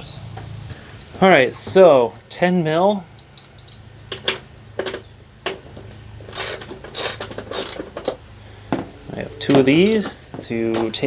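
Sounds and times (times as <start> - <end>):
hand ratchet clicking: 6.4 - 7.8.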